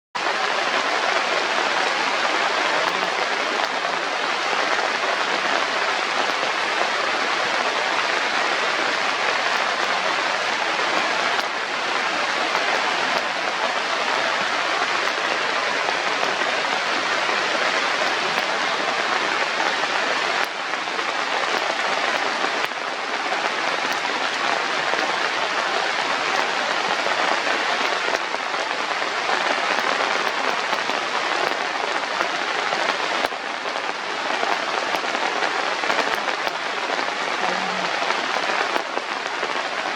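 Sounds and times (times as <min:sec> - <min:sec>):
steady rushing hiss: 0:00.3 - 0:39.9.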